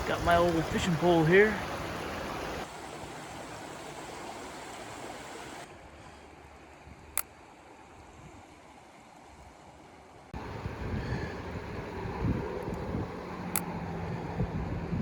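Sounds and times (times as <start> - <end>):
river water rushing: 0.0 - 14.4.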